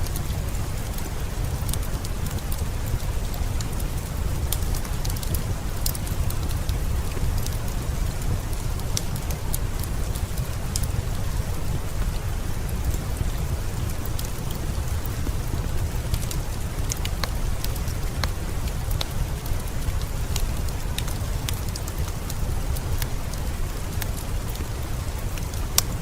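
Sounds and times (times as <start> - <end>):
heavy rain: 0.0 - 26.0
raindrop clicks: 0.0 - 26.0.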